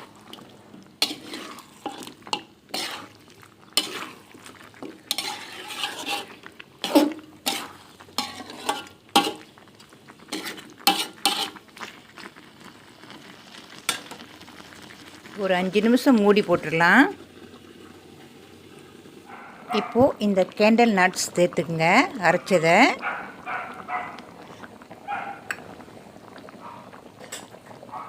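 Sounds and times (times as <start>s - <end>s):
faint sizzle: 0.0s - 28.0s
spoon scraping a cooking pot: 1.0s - 3.2s, 3.8s - 9.5s, 10.3s - 11.6s.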